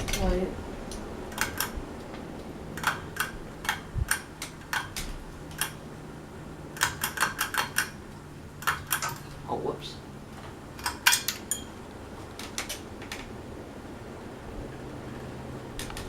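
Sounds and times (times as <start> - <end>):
low steady hum: 0.0 - 16.0
clicks of small hard parts: 6.8 - 8.0, 8.6 - 9.3.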